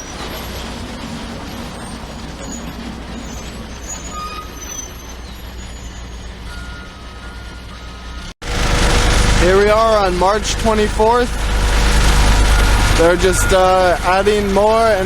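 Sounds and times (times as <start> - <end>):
diesel engine rumble: 0.0 - 15.0.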